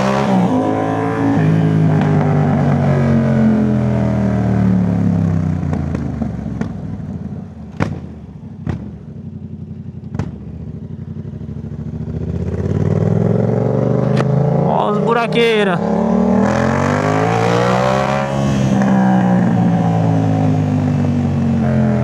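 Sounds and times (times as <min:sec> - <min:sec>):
motorcycle engine: 0:00.0 - 0:22.0
exhaust pops: 0:07.7 - 0:09.1.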